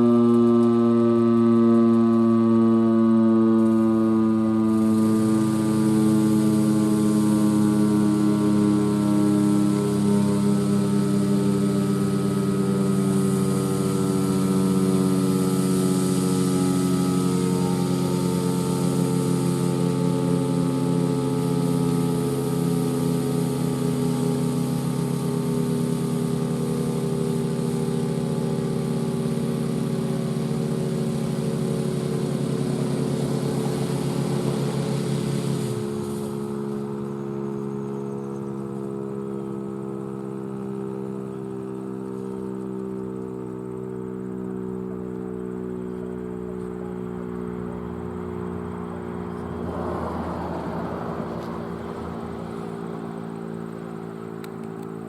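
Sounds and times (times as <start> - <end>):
outdoor warning siren winding down: 0.0 - 55.0
rushing hiss: 29.8 - 37.0.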